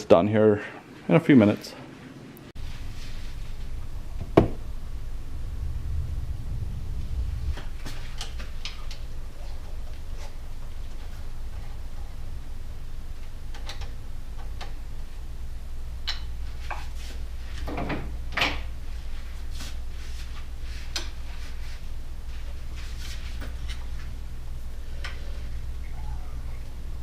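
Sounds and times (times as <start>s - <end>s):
low hum: 2.5s - 16.6s, 21.8s - 27.0s.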